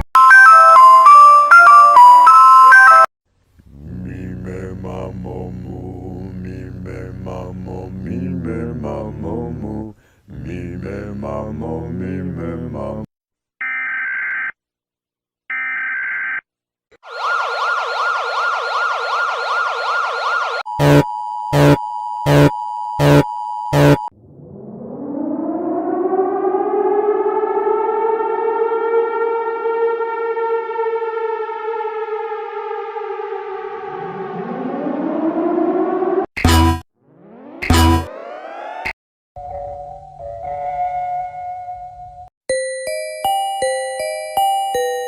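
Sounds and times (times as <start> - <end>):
warbling siren tone: 17.0 - 21.0, 23.8 - 39.0
electronic beeps: 20.8 - 24.1
two-note alert tone: 36.4 - 36.8, 37.6 - 38.3
electronic chime melody: 42.5 - 45.0.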